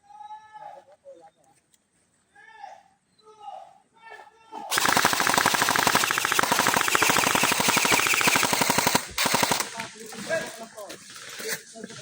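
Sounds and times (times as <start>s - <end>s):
airsoft gun automatic fire: 4.7s - 9.9s.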